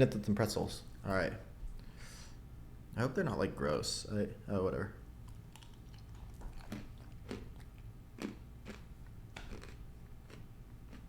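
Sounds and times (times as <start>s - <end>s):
person chewing crunchy snacks: 5.3s - 11.0s.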